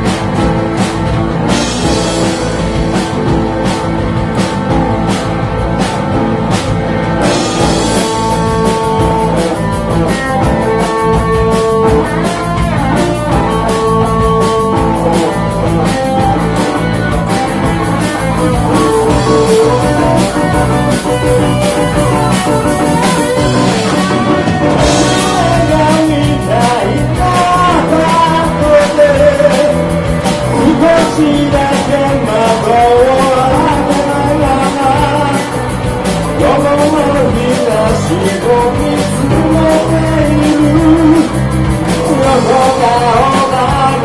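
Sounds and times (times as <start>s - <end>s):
drum kit beat: 0.0s - 44.0s
live rock band playing: 0.0s - 44.0s.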